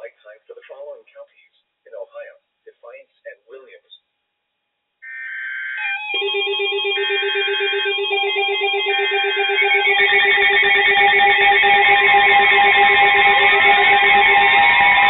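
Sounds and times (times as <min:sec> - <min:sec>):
warbling alarm tones: 0:05.0 - 0:15.0
rapidly pulsing beep: 0:05.1 - 0:15.0.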